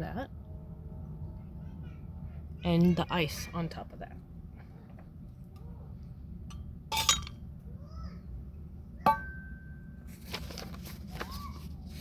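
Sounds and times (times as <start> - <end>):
soft rustling and clatter: 10.0 - 12.0.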